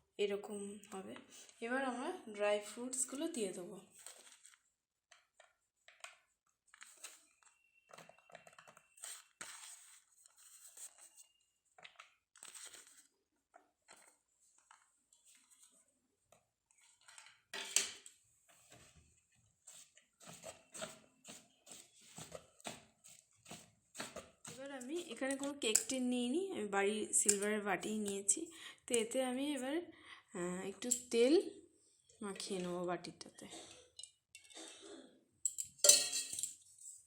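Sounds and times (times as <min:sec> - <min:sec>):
spoon scraping and knocking bowl: 0:19.7 - 0:26.0, 0:35.5 - 0:36.6.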